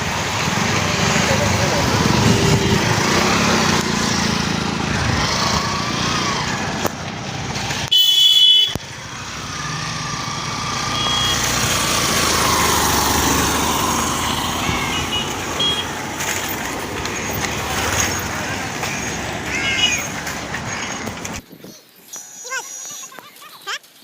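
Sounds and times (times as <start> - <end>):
road traffic noise: 0.0 - 24.0
vehicle horn sounding: 7.9 - 8.8, 10.9 - 11.6, 14.2 - 16.0.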